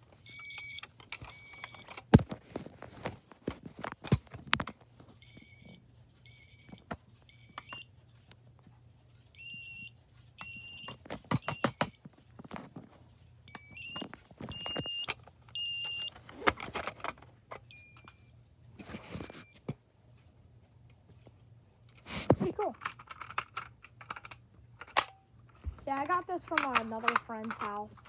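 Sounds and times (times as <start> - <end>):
smoke alarm beeps: 0.3 - 1.9, 9.3 - 12.0, 13.5 - 16.1
handling clicks and knocks: 10.8 - 13.0, 22.2 - 28.0.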